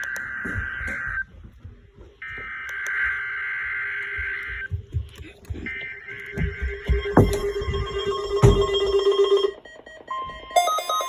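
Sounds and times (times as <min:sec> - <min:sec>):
shrill buzzing data tones: 0:05.6 - 0:09.6.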